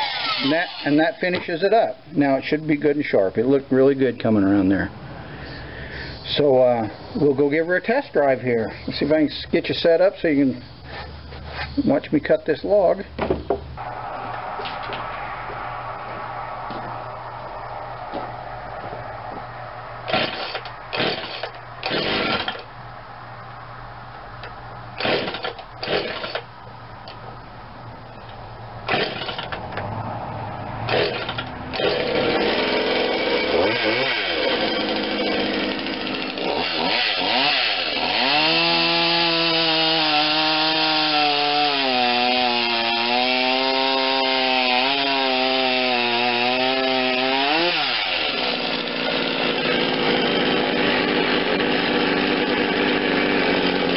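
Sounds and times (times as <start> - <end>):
chainsaw cutting log: 0.0 - 2.0, 20.0 - 22.7, 25.0 - 26.5, 28.8 - 29.7, 30.9 - 53.9
chainsaw idling and revving: 0.0 - 2.0, 20.0 - 22.7, 25.0 - 26.4, 28.8 - 29.6, 30.9 - 53.9.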